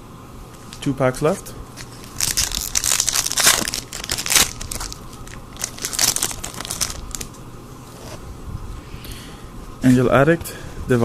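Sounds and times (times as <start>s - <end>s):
foil wrapper crinkling and tearing: 1.8s - 7.3s.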